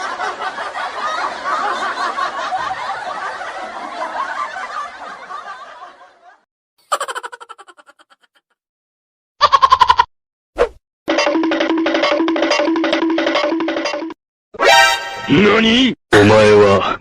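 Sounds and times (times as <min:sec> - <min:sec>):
people snickering and chuckling: 0:00.0 - 0:08.6.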